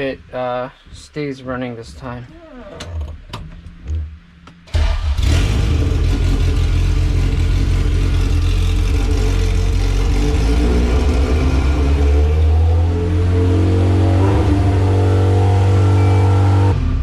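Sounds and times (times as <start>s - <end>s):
car engine starting and idling: 4.5s - 13.2s.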